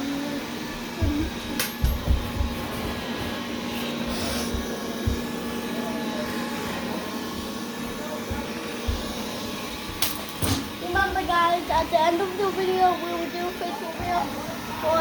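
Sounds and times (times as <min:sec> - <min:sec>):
robot vacuum whirring: 0:00.0 - 0:15.0.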